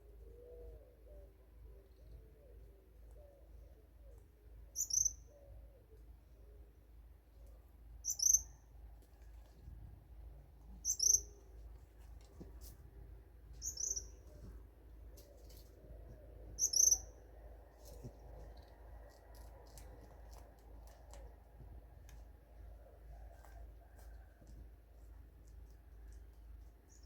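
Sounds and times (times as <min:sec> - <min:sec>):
faint low warbling calls: 0:00.0 - 0:06.0, 0:08.0 - 0:08.7, 0:10.8 - 0:11.5, 0:13.6 - 0:19.8.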